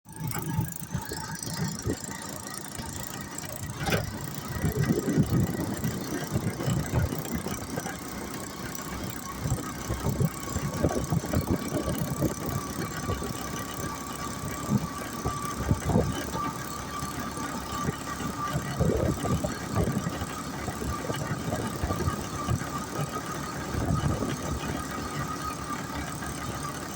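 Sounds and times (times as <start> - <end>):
rickshaw engine running: 0.1 - 26.9
knocks and rattles: 0.2 - 16.8.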